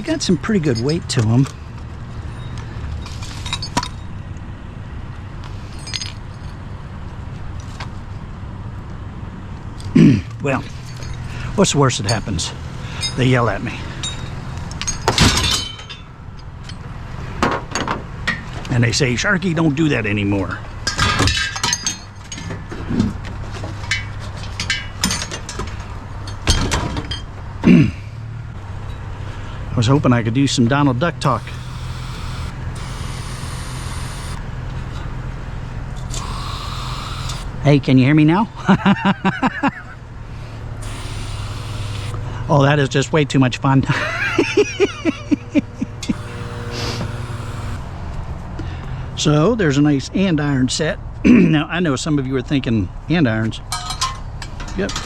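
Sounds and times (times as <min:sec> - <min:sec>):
low hum: 0:31.3 - 0:37.7, 0:40.7 - 0:42.4, 0:46.1 - 0:48.0.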